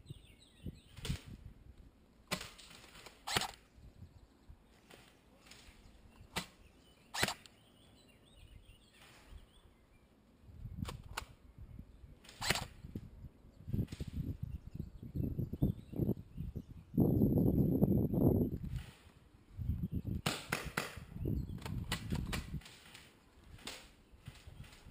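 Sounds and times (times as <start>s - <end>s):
rustling: 4.7s - 7.5s
airsoft gun shots: 7.2s - 7.5s, 20.2s - 23.0s.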